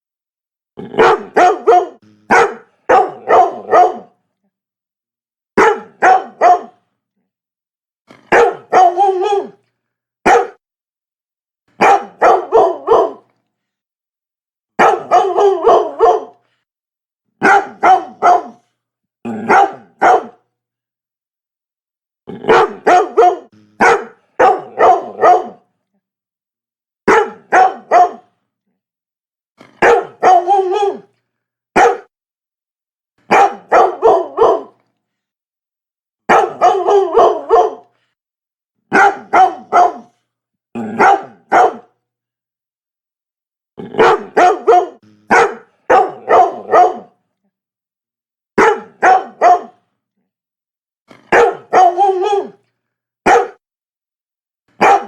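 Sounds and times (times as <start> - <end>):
dog barking: 0.9 - 4.2, 5.6 - 6.8, 8.1 - 9.6, 10.3 - 10.6, 11.8 - 13.3, 14.8 - 16.4, 17.4 - 18.7, 19.4 - 20.4, 22.4 - 25.6, 27.0 - 28.3, 29.7 - 31.1, 31.7 - 32.1, 33.3 - 34.8, 36.3 - 37.9, 38.9 - 40.2, 40.8 - 42.0, 43.8 - 47.2, 48.6 - 49.8, 51.2 - 52.6, 53.2 - 53.6, 54.7 - 55.0.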